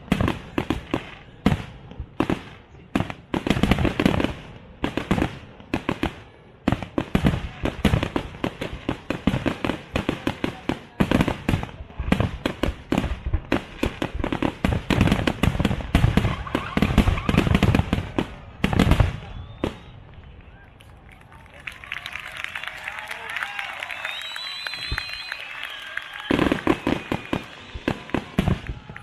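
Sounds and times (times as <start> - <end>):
fireworks crackling: 0.0 - 29.0
fireworks shells bursting: 24.0 - 29.0.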